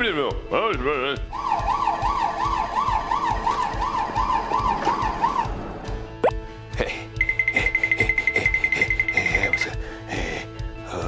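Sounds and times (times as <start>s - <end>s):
cartoon ambulance siren wailing: 1.3s - 5.5s.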